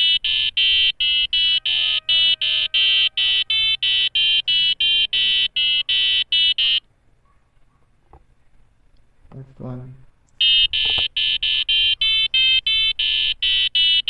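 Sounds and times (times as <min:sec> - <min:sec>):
buzzer beeping a tune: 0:00.0 - 0:06.8, 0:10.4 - 0:14.0.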